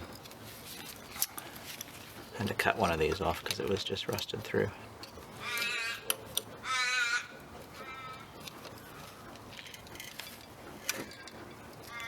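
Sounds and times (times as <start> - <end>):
crow cawing: 5.4 - 6.0, 6.6 - 8.3.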